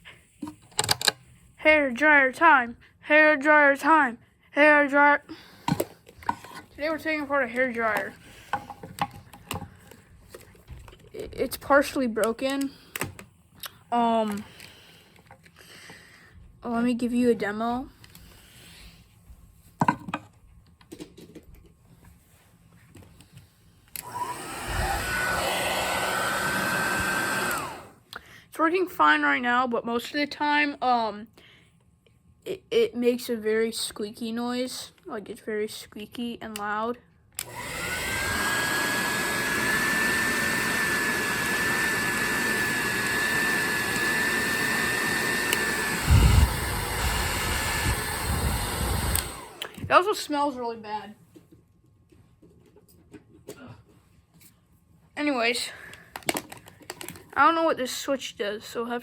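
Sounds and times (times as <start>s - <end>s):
hair dryer blowing: 6.8s - 9.1s, 23.9s - 28.0s, 37.4s - 50.1s
hair dryer knock: 24.0s - 27.8s, 37.4s - 49.8s.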